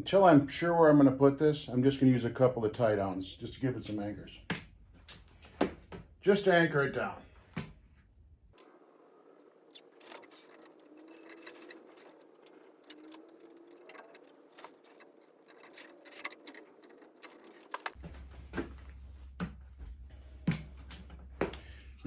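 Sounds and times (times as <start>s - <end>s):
small clicks and light rattles: 9.7s - 18.0s.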